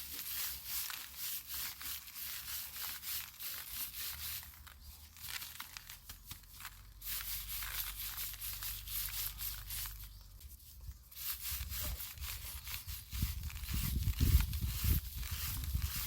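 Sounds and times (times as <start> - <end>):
dry stalks rustling and crackling: 0.0 - 16.0.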